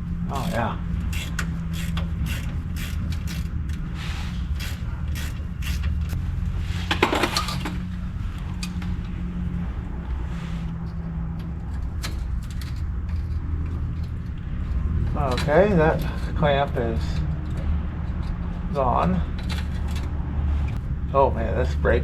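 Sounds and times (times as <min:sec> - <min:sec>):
steady low hum: 0:00.0 - 0:22.0
hand tools clicking on metal: 0:00.3 - 0:03.9, 0:04.5 - 0:06.2, 0:10.9 - 0:20.1.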